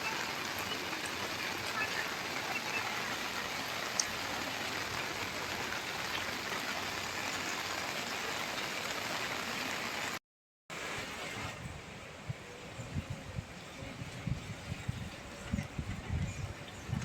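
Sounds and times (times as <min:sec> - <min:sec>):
heavy rain pattering: 0:00.0 - 0:10.2.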